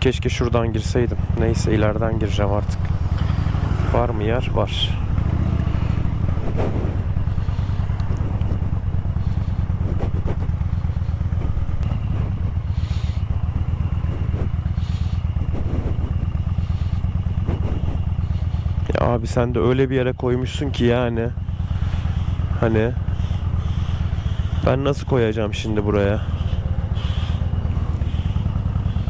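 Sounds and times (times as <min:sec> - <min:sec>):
motorcycle engine running at low revs: 0:00.0 - 0:29.0.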